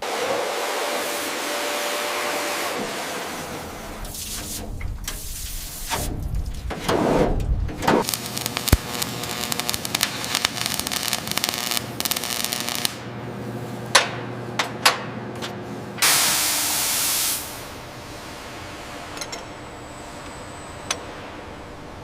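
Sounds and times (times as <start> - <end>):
crackling and metal clicking: 4.0 - 13.0
compressed air hiss: 16.0 - 17.8.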